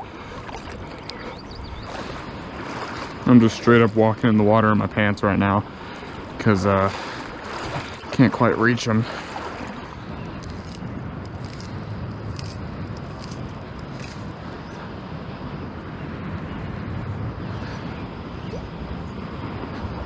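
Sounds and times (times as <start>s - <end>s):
light water splashes: 0.0s - 14.6s
surf: 0.0s - 20.0s
wind: 0.0s - 20.0s.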